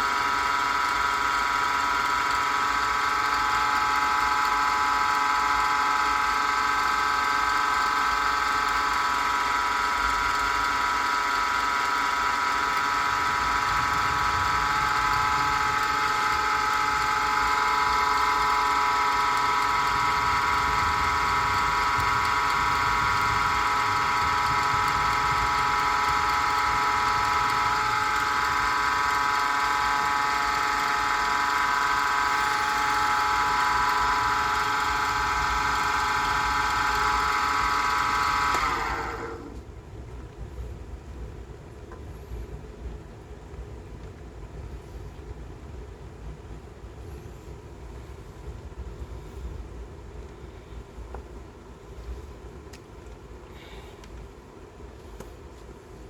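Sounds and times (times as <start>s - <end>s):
wood lathe motor whining: 0.0s - 39.6s.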